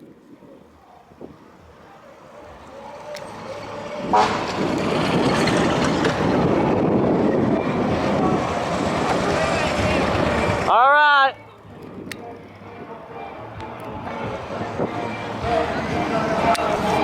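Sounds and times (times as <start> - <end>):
fire truck horn: 4.0 - 4.9.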